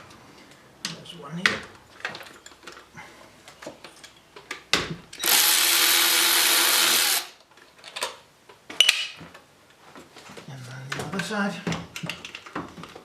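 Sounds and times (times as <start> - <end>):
power drill running: 5.2 - 7.4.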